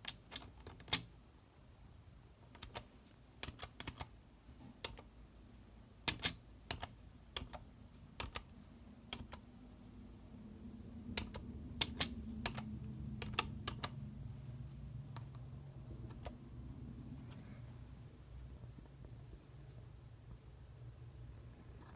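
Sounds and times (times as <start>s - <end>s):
keyboard keys clicking: 2.5s - 4.1s, 4.8s - 5.1s, 6.1s - 8.5s, 9.1s - 9.5s, 11.1s - 14.0s, 15.1s - 16.4s.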